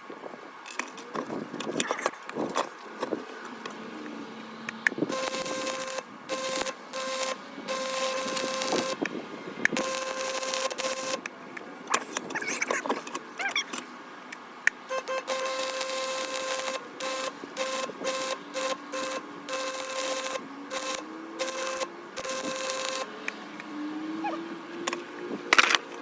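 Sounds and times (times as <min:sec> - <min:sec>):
welding arc crackling: 0:05.0 - 0:11.4, 0:14.7 - 0:23.3.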